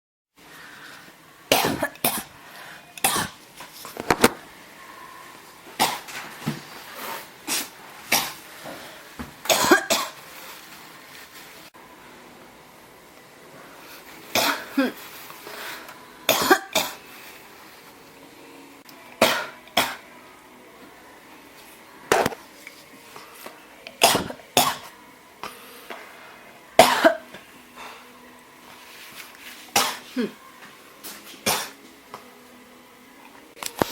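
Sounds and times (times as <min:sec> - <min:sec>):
person coughing: 0:01.5 - 0:02.3, 0:09.5 - 0:10.2, 0:14.3 - 0:15.0, 0:24.0 - 0:24.9, 0:26.8 - 0:27.3, 0:29.8 - 0:30.4.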